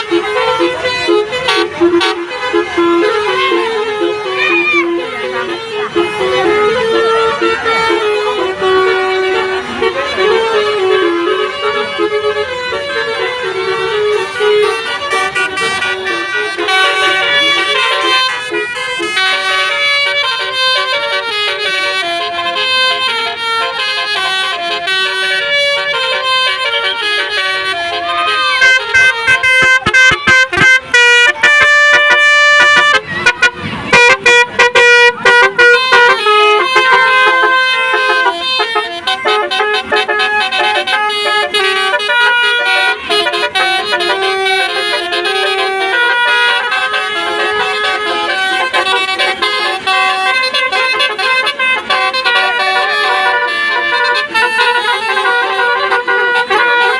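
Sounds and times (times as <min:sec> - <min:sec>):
multi-tone bus air horns melody: 0:00.0 - 0:56.9.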